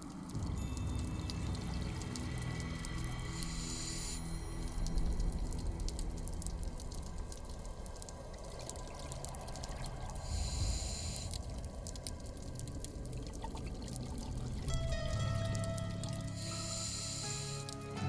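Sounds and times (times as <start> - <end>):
air hissing through regulator: 3.3 - 4.3, 10.2 - 11.3, 16.3 - 17.7
crackle of faint clicks: 4.2 - 16.2
bubbly wash: 4.2 - 16.5
scuba diver breathing underwater: 16.3 - 17.7.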